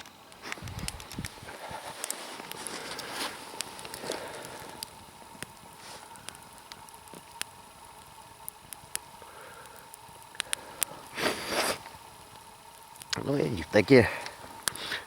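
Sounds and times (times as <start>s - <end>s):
loud rustle: 0.0s - 7.3s
campfire crackling and popping: 0.0s - 15.0s.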